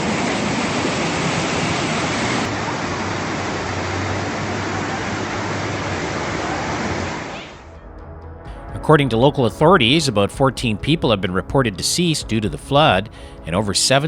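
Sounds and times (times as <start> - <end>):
floodwater rushing: 0.0 - 7.7.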